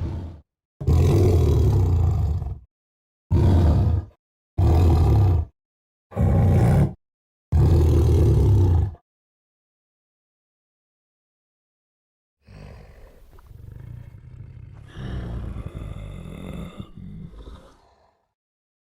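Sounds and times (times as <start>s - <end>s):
deep monster roars: 0.0s - 2.7s, 3.3s - 5.5s, 6.1s - 9.0s, 12.4s - 18.2s.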